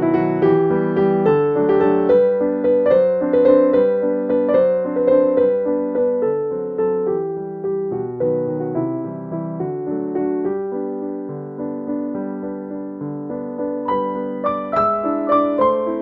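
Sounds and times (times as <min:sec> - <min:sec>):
gentle piano melody: 0:00.0 - 0:16.0.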